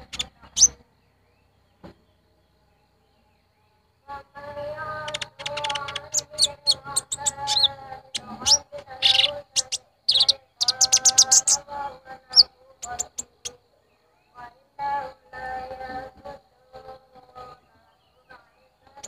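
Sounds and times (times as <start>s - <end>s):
bird chirps and trills: 0.0s - 14.4s
chanting voice: 3.0s - 19.0s.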